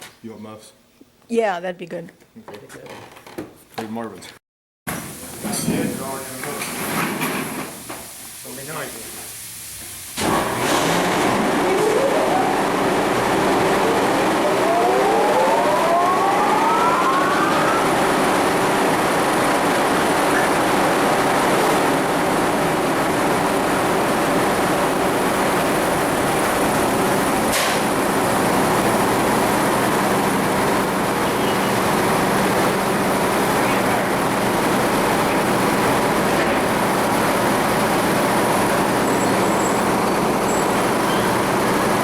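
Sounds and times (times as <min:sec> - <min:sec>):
sawmill machinery running: 0:10.2 - 0:42.0
double rising whine: 0:11.1 - 0:24.1.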